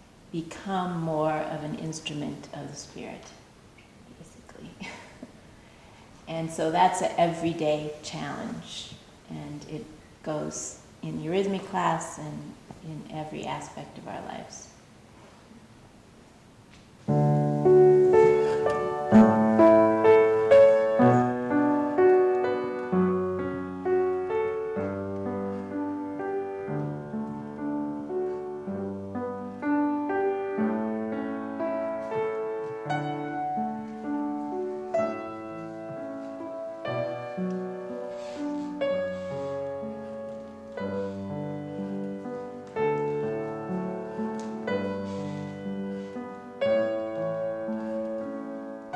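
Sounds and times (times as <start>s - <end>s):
solo piano music: 17.0s - 48.9s.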